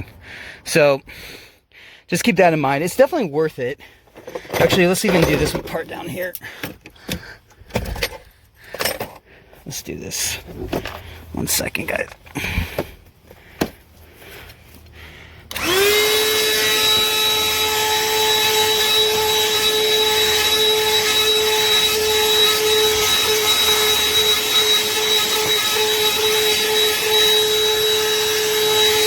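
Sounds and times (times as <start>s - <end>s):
handheld vacuum motor whine: 15.4s - 29.0s.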